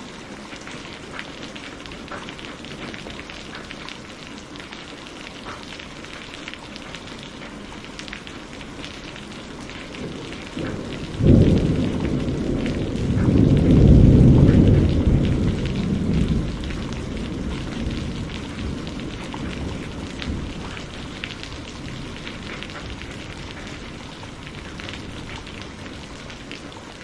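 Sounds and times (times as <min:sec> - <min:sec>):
steady rain hissing: 0:00.0 - 0:27.0
thunderclap and rolling rumble: 0:09.6 - 0:26.7.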